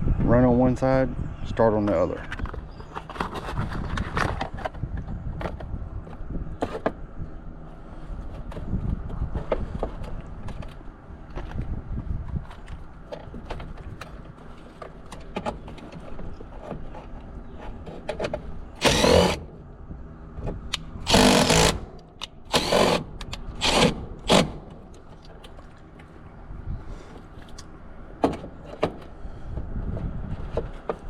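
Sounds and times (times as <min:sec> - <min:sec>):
cordless power tool bursts: 0:18.8 - 0:19.5, 0:21.0 - 0:21.9, 0:22.5 - 0:24.7.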